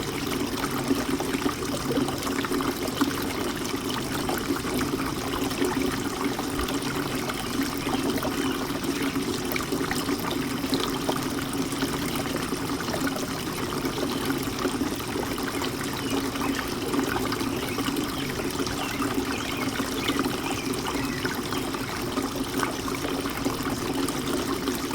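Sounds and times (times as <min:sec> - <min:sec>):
fountain water trickling and splashing: 0:00.0 - 0:24.9
water dripping: 0:00.0 - 0:24.9.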